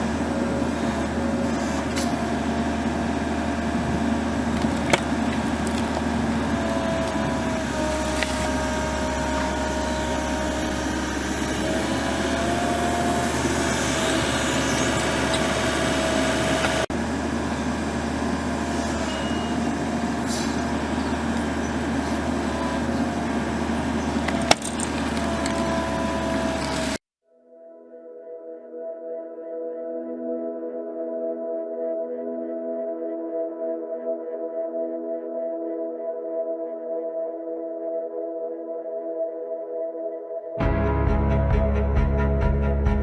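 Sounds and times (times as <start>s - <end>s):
faint wavering whine: 0.0s - 27.0s
heavy machinery engine running: 0.0s - 27.0s.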